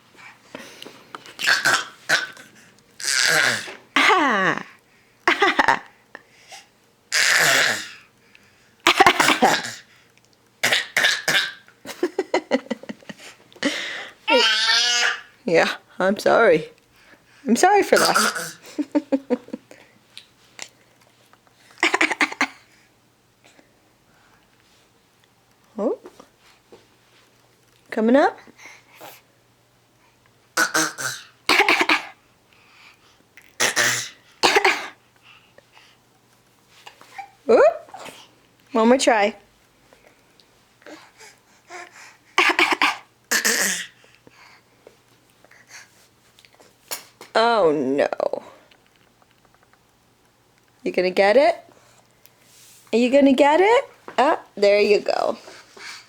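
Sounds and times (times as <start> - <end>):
person fake coughing: 5.3 - 5.8, 8.9 - 9.8, 10.6 - 11.6, 18.0 - 18.6, 21.8 - 22.6, 30.6 - 32.2, 33.6 - 35.0, 42.4 - 43.9.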